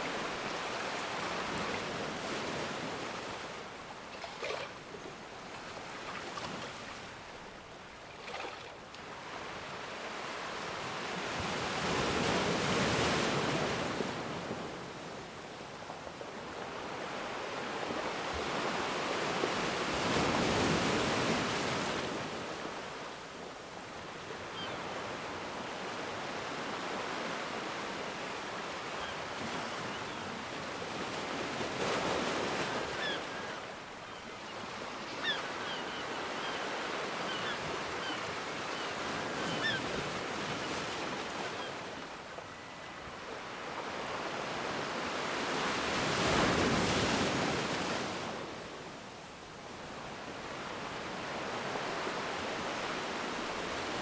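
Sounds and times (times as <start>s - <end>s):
ocean waves washing in: 0.0s - 7.4s.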